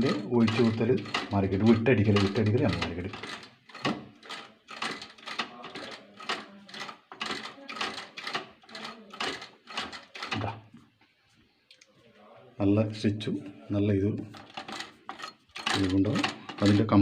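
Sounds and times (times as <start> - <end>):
sewing machine clacking: 0.0 - 10.6, 14.3 - 17.0.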